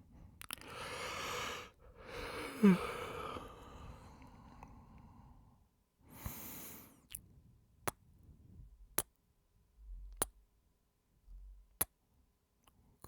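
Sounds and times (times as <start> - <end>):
breathy exhale: 0.6 - 5.4, 6.1 - 7.0.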